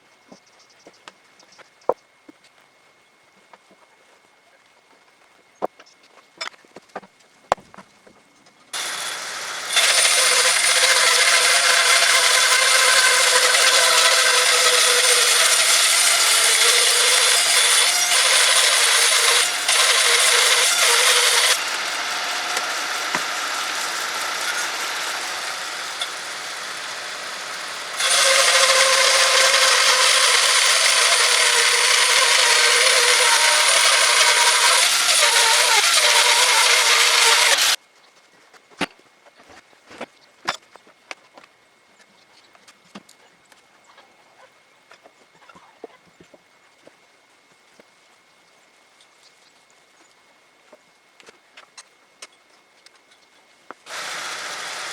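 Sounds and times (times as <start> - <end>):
bandsaw mill sawing log: 8.8 - 37.8, 53.9 - 54.9.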